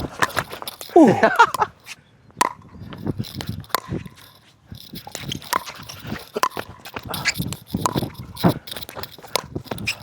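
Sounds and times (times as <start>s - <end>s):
paddles striking plastic ball: 2.4s - 4.3s.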